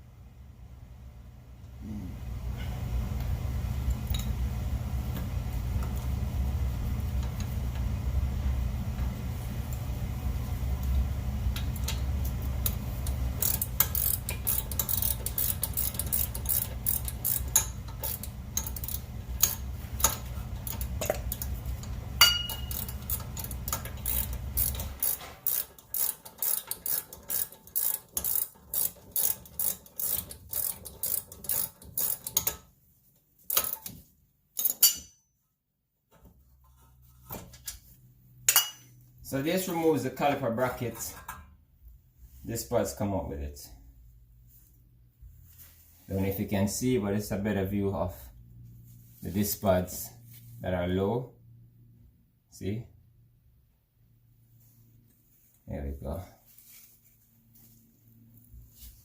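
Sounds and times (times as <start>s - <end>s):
steady low hum: 0.0s - 35.2s
hand ratchet clicking: 12.6s - 32.6s, 33.5s - 33.9s.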